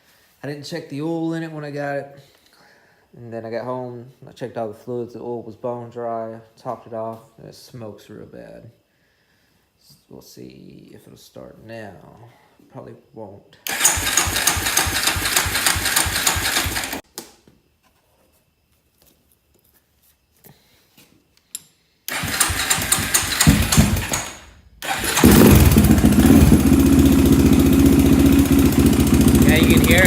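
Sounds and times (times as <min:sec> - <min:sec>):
electric starter cranking engine: 0:13.7 - 0:17.0, 0:22.1 - 0:30.0.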